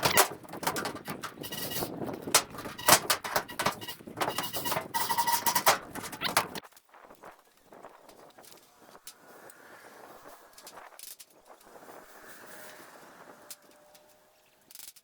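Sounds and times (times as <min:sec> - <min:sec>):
steady whining tones: 0:00.0 - 0:06.6
tin roofing rattling and knocking: 0:00.0 - 0:06.6.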